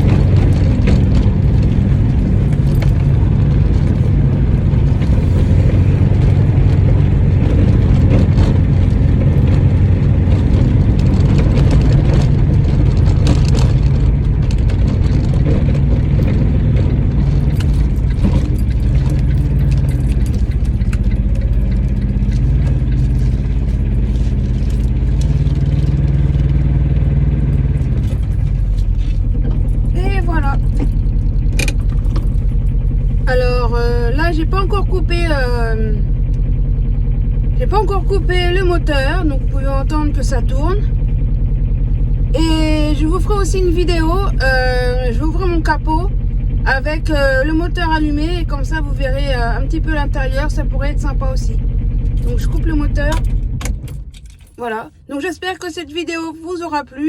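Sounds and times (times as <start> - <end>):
light clicks and rattles: 0.0 - 33.0
small car engine droning: 0.0 - 57.0.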